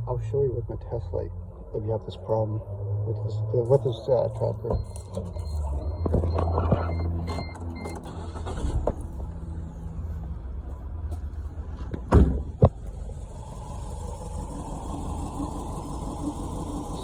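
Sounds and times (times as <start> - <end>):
car engine idling: 0.0 - 17.0
loud knocks: 11.9 - 12.8.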